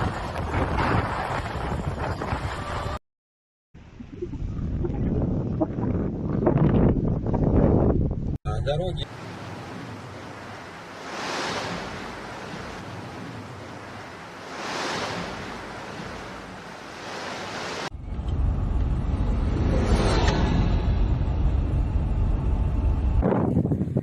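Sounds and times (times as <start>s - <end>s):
wind buffeting microphone: 0.0s - 3.0s, 3.9s - 8.4s, 23.1s - 24.0s
blizzard wind gusting: 9.1s - 24.0s.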